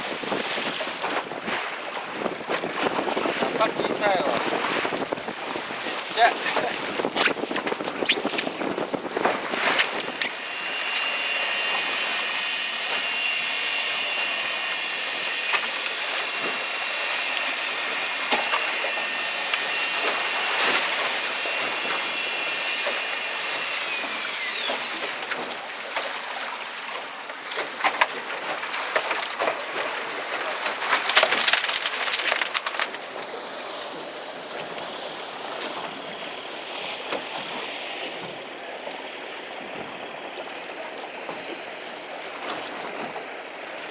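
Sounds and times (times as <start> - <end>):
boat engine whining: 2.3 - 26.0, 30.7 - 41.5.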